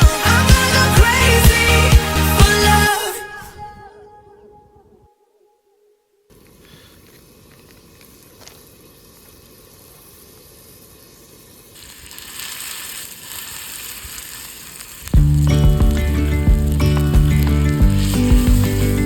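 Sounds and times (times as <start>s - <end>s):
loud music: 0.0s - 3.3s
food sizzling in a pan: 8.2s - 19.0s.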